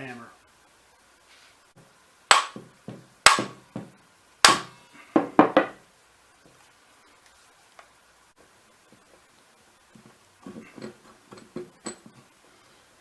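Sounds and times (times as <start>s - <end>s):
hammer knocking on metal tool: 2.3s - 5.7s.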